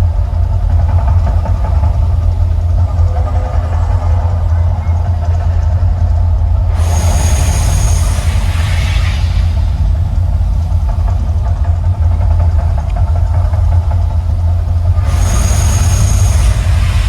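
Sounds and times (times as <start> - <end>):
deep steady rumble: 0.0 - 17.0
loud rushing hiss with whistle: 6.6 - 11.2, 15.0 - 17.0.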